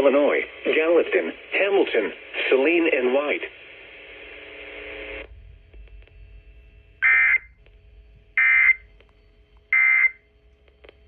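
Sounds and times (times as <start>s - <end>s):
high buzzy digital data tones: 6.0s - 9.0s, 9.7s - 10.2s.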